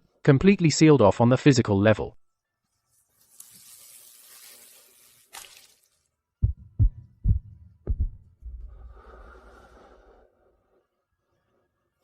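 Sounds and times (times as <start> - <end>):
heartbeat thumps: 6.4 - 9.1.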